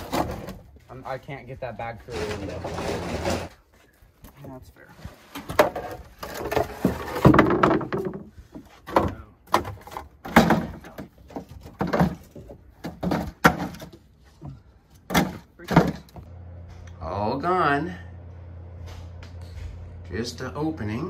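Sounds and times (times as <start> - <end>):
debris knocking and scraping: 0.0 - 1.0, 1.9 - 3.7, 4.3 - 16.3.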